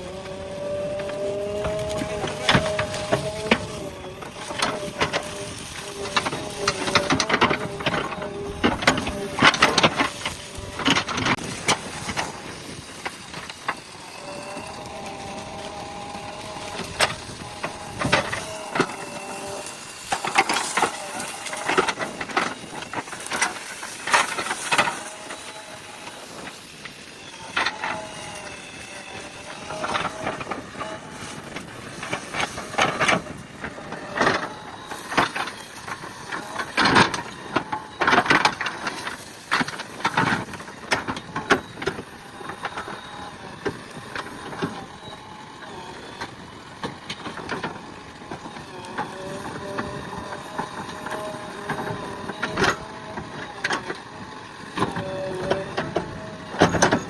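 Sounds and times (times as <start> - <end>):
brush and earth crunching: 0.0 - 57.0
machine whine: 0.0 - 57.0.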